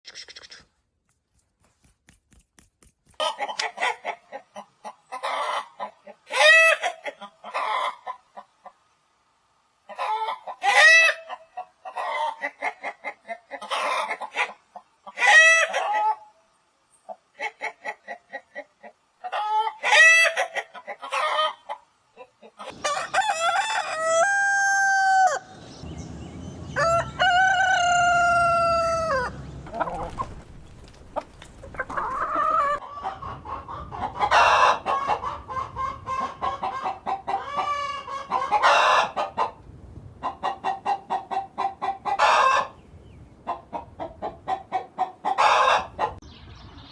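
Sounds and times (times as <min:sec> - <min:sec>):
chickens clucking: 0:03.0 - 0:09.0, 0:09.8 - 0:16.3, 0:17.0 - 0:24.3, 0:26.8 - 0:46.2
rooster crowing: 0:22.7 - 0:25.6, 0:26.6 - 0:29.4.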